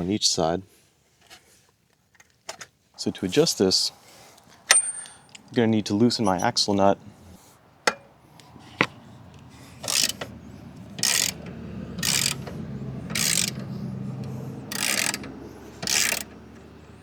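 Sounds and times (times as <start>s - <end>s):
socket ratchet clicking: 9.8s - 16.7s.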